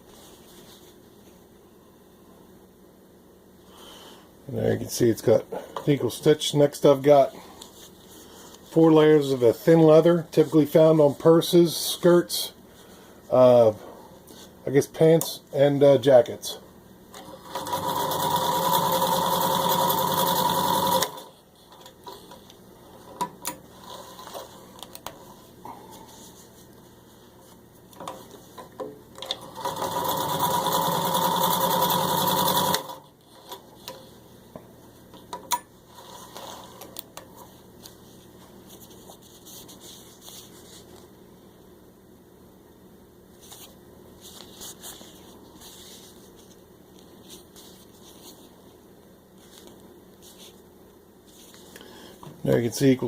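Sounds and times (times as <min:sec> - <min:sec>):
sewing machine stitching: 0:17.2 - 0:21.3, 0:29.2 - 0:33.1.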